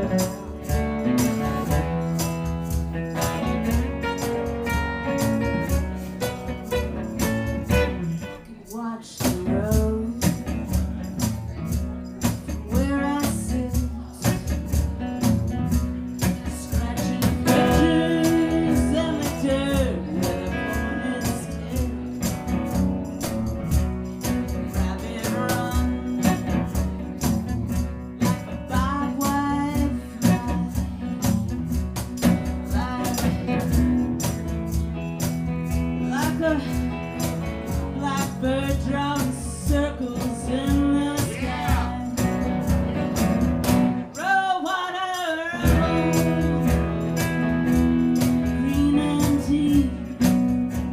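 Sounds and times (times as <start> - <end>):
strummed guitar: 0.0 - 50.9
person singing: 16.2 - 22.3, 28.2 - 31.4, 32.6 - 34.0, 36.0 - 42.7, 44.1 - 47.5, 48.2 - 50.3.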